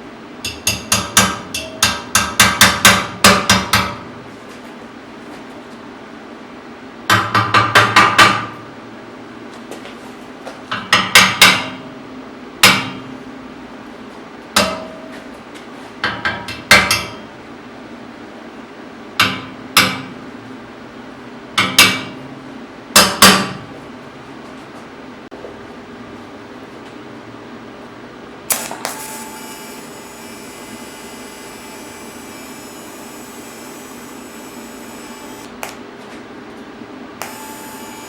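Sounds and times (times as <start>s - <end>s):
hammer striking steel: 0.5s - 4.0s, 14.6s - 15.1s.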